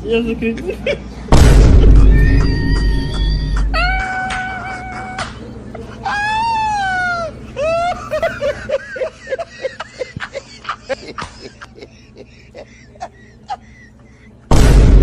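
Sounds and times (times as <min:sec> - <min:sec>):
person crying out: 0:01.9 - 0:05.4, 0:06.0 - 0:08.3.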